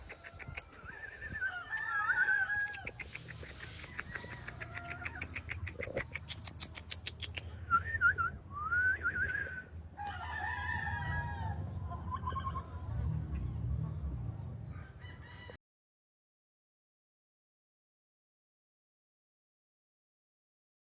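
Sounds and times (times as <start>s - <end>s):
roosters crowing: 0.0s - 6.2s, 8.6s - 13.5s, 14.7s - 15.6s
rapid clicks: 2.7s - 7.4s.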